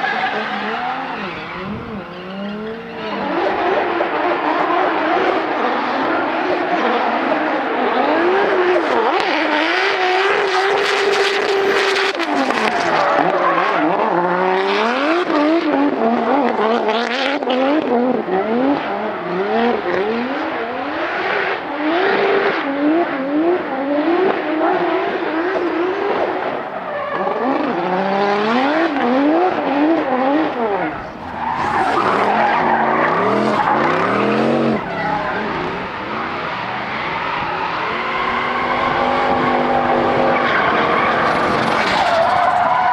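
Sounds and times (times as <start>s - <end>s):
tyre squeal: 0.0s - 9.7s, 26.6s - 42.9s
car engine revving hard: 0.0s - 42.9s.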